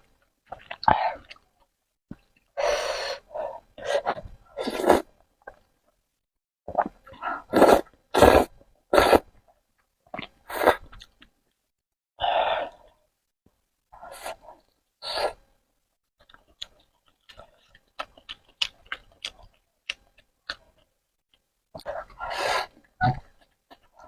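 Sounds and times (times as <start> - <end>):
loud noodle slurps: 4.6 - 5.1, 7.5 - 9.2
soft chewing clicks: 16.2 - 21.9.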